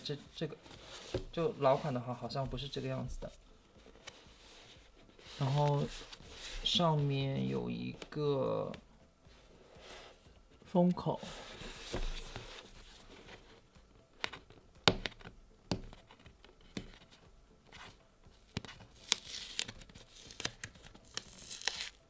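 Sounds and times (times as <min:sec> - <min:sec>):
cardboard scraping rustle: 0:00.0 - 0:07.8, 0:11.2 - 0:13.6, 0:16.9 - 0:22.0
cardboard box knocks and clicks: 0:11.5 - 0:13.4, 0:14.2 - 0:17.2.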